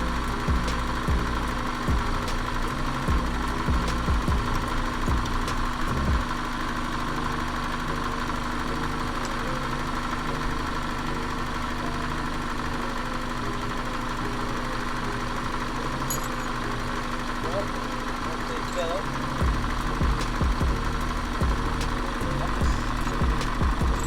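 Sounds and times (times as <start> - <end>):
low thumps: 0.0 - 2.5, 3.1 - 6.3, 19.4 - 24.0
car engine idling: 0.0 - 24.0.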